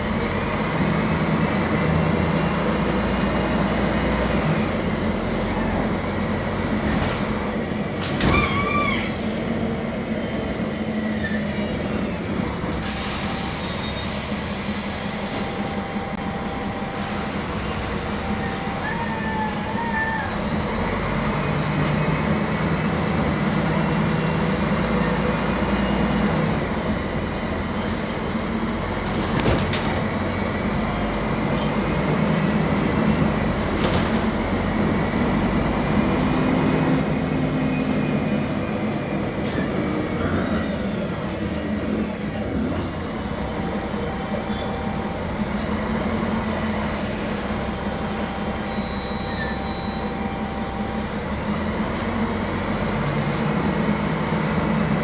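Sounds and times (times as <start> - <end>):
diesel bus engine running: 0.0 - 55.0
short squeals: 8.2 - 9.3, 11.0 - 14.5, 18.4 - 20.6
loud air hiss: 12.6 - 16.0.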